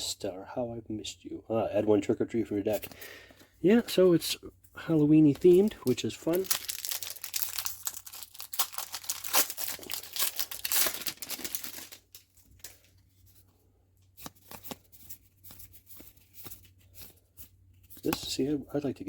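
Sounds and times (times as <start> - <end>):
wrapper tearing and crinkling: 5.3 - 12.9.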